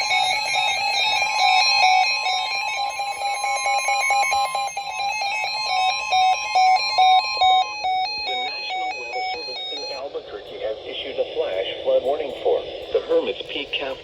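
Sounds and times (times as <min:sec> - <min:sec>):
warbling electronic beeps: 0:00.0 - 0:10.0
steady electronic tone: 0:00.0 - 0:13.0.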